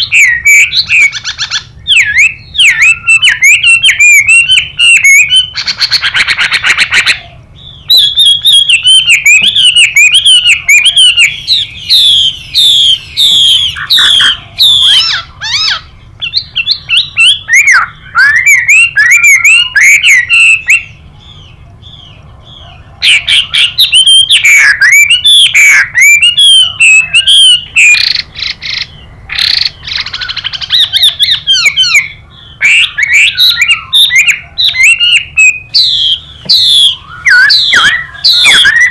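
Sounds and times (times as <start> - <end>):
bird whistling song: 0.0 - 38.9
harsh buzzy rasping bird calls: 0.0 - 38.9.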